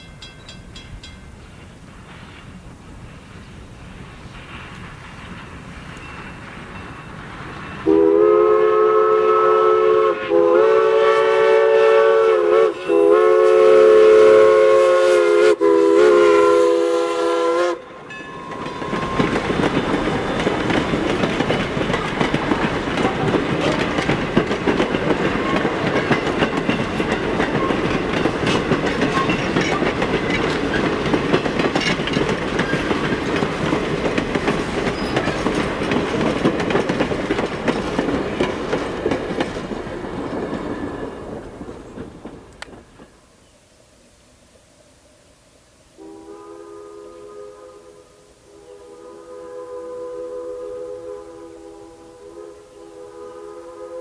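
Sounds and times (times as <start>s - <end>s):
train wheels clickety-clack: 0.0s - 8.2s, 17.9s - 43.2s
train horn chord blasts: 7.8s - 19.3s, 46.0s - 54.0s.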